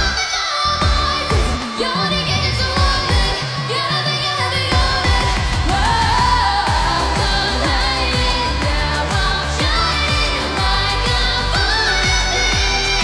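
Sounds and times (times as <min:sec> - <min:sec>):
sung vocals: 0:00.0 - 0:13.0
fast electronic kick-drum beat: 0:00.8 - 0:01.7, 0:02.4 - 0:03.6, 0:04.7 - 0:13.0.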